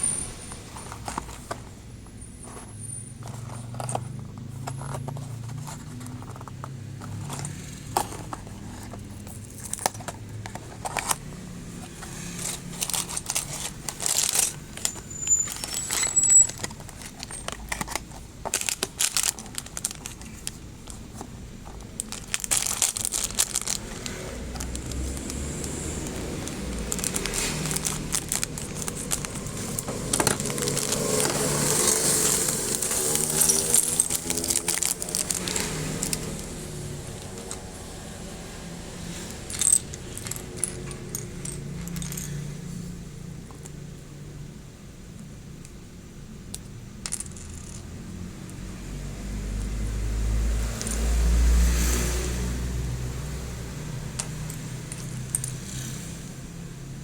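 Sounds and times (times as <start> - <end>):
plastic packaging crinkling: 3.2 - 38.4
small plastic clicks and rattles: 15.6 - 37.8.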